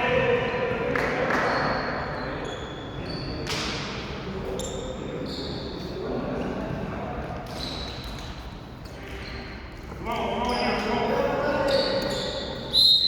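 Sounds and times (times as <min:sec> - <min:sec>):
voices in a hall: 0:00.0 - 0:13.0
shoes squeaking on court floor: 0:01.6 - 0:03.7, 0:04.5 - 0:05.9, 0:07.5 - 0:08.5, 0:09.2 - 0:11.0, 0:11.6 - 0:13.0.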